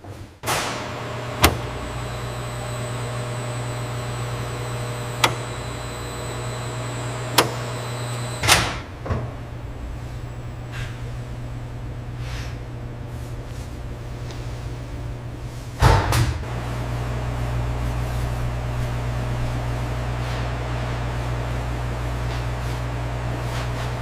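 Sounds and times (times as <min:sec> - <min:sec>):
factory machinery humming: 0:00.4 - 0:24.0
sharp clicks: 0:05.2 - 0:05.5.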